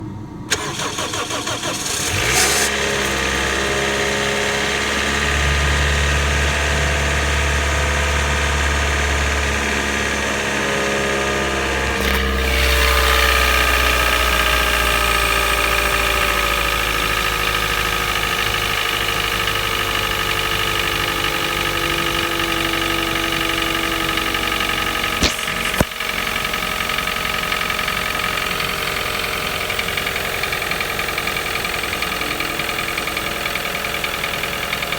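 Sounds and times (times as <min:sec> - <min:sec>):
car engine cranking and idling: 0:00.0 - 0:34.9
sharp clicks: 0:25.2 - 0:26.1.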